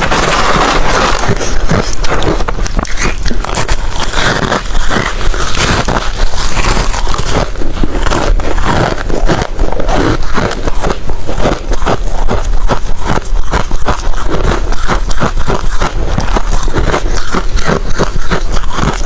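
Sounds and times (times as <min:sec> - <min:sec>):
ice being chewed crunching: 0:00.0 - 0:19.0.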